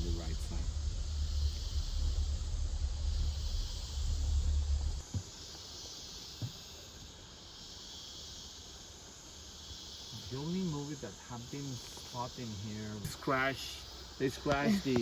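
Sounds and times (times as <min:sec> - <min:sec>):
low rumble: 0:00.0 - 0:05.1
cicadas and insects droning: 0:00.0 - 0:15.0.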